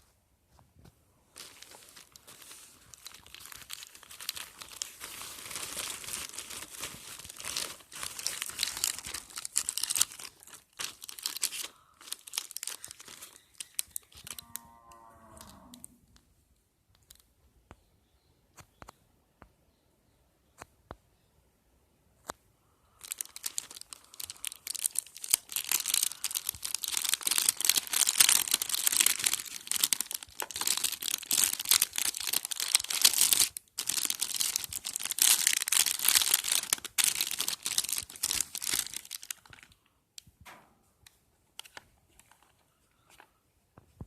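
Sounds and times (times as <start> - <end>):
packaging crinkling: 1.4 - 15.9, 23.0 - 39.8, 41.6 - 43.3.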